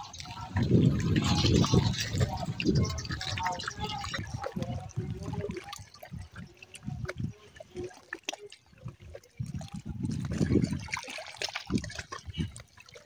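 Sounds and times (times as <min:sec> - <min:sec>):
small waves lapping at shoreline: 0:00.0 - 0:13.0.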